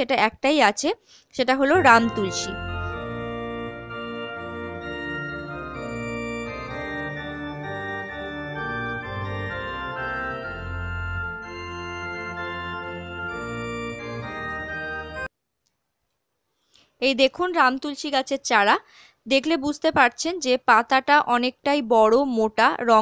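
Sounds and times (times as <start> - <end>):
bass line: 1.7 - 15.3
organ-like keyboard chords: 1.7 - 15.3.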